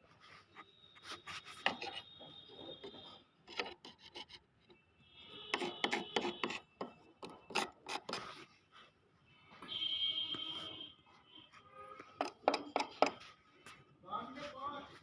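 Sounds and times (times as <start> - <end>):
hand tool rasping on wood: 5.5 - 8.2.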